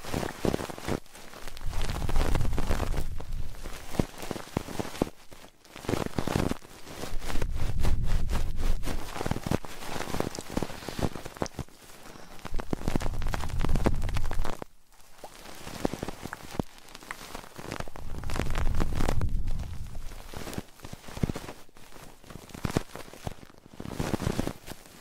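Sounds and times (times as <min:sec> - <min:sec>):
crackling clicks and scratching: 0:00.0 - 0:25.0
rubbing on a microphone: 0:00.0 - 0:25.0
low rubbing rumble: 0:01.6 - 0:03.6, 0:07.2 - 0:08.9, 0:18.0 - 0:20.3.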